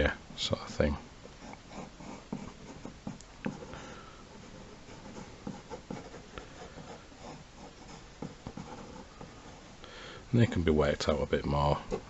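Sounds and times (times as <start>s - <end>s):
drawing tool scratching: 0.6s - 9.8s.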